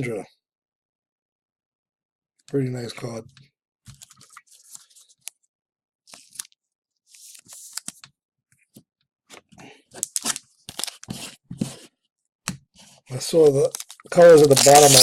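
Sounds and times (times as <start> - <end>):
rustling and crinkling packaging: 10.0 - 11.8, 13.3 - 15.0.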